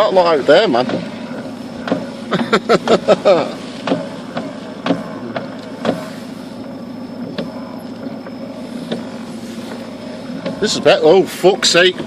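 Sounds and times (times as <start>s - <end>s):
car engine humming: 0.0s - 12.0s
sharp knocks: 3.8s - 6.1s.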